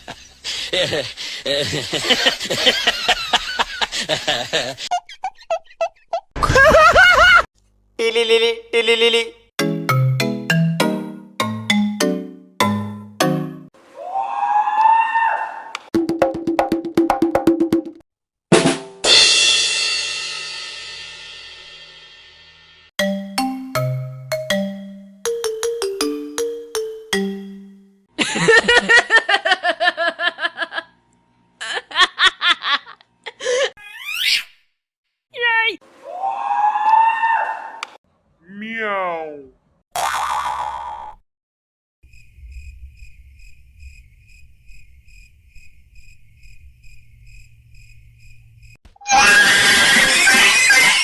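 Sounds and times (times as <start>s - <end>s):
chiming ringtone-like tune: 9.6s - 13.7s, 23.0s - 28.0s
crickets chirping: 42.1s - 48.8s
rapid high-pitched laughter: 49.2s - 51.0s.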